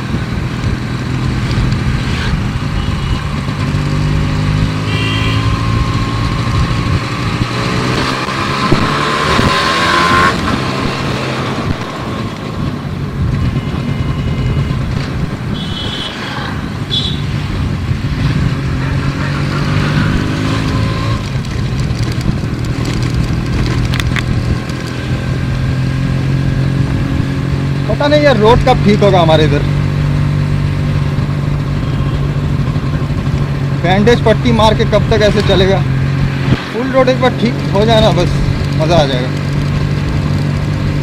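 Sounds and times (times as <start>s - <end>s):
wind rush on microphone: 0.0s - 4.8s, 5.6s - 19.1s, 19.8s - 27.9s
motorcycle engine revving: 0.0s - 41.0s.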